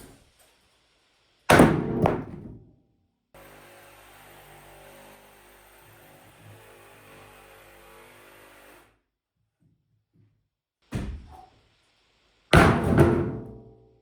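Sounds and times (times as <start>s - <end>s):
thrown object thudding: 1.6s - 2.6s.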